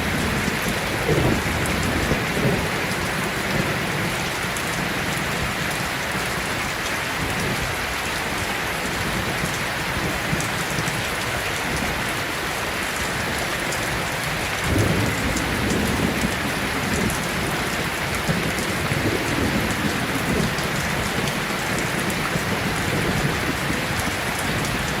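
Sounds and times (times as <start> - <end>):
thunder rumbling: 0.0 - 5.6, 14.4 - 25.0
steady rain falling: 0.0 - 25.0.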